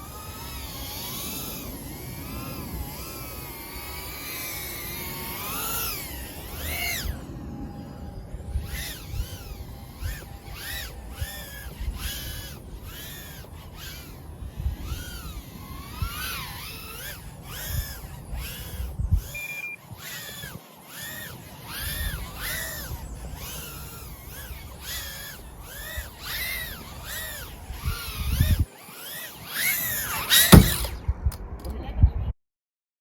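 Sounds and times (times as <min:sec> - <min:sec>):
drone motors whining: 0:00.0 - 0:31.2
short steady beep: 0:19.3 - 0:19.8.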